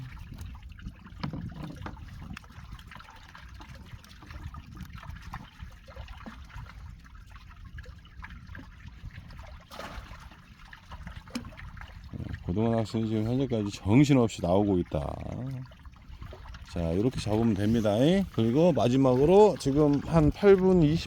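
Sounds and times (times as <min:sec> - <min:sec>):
water trickling and splashing: 0:00.0 - 0:21.0.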